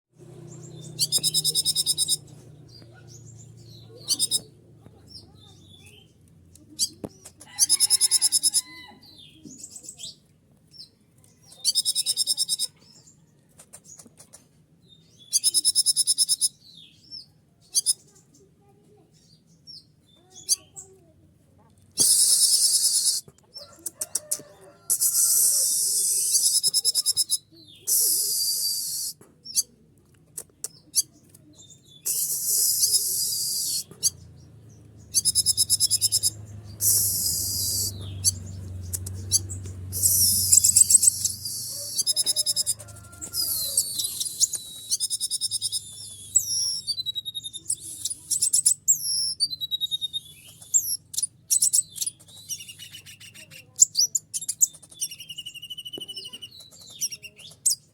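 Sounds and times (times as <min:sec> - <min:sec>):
bird singing high twittering trills: 0:00.3 - 0:06.1, 0:30.7 - 0:57.9.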